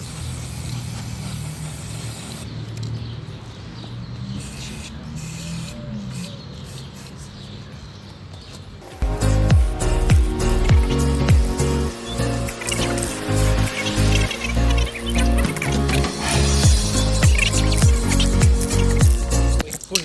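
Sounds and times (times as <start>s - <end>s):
spray paint hissing: 0.0s - 2.8s, 4.2s - 7.4s, 8.9s - 19.7s.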